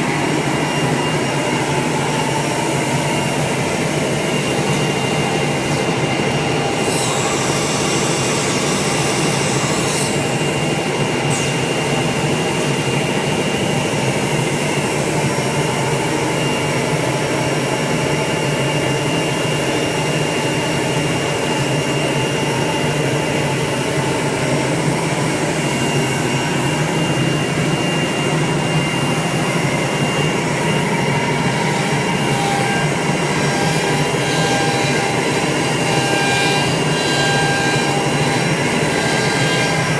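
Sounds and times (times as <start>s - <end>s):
high spindle whine: 0.0s - 39.9s
router rushing noise: 23.6s - 39.9s.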